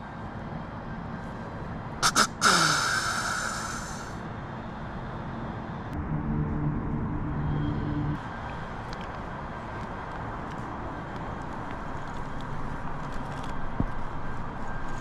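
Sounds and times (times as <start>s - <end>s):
low steady droning: 0.0s - 15.0s
deer call snorts: 2.0s - 4.2s
long hissing wheeze: 2.0s - 4.2s.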